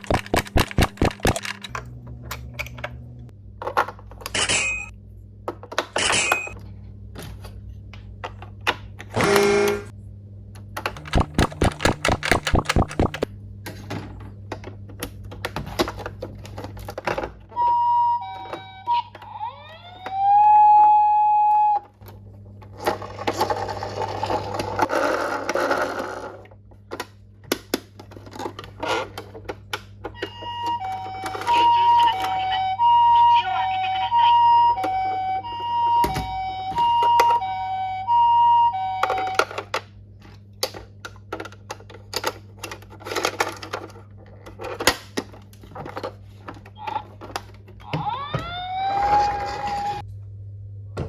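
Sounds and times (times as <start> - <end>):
packaging rustle: 0.0 - 1.7
plastic clicks and rattles: 0.0 - 2.8, 10.8 - 13.3
toy electronic beeps and tone: 6.1 - 6.6, 11.0 - 13.3, 30.2 - 39.5.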